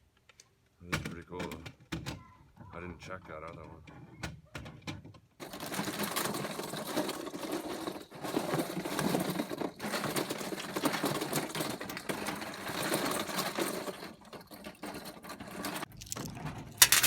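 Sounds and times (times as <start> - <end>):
small hard objects clattering: 5.4 - 17.0.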